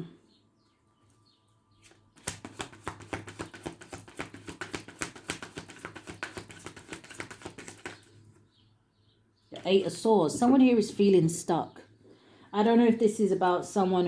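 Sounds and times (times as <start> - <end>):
cards being shuffled: 1.8 - 8.2.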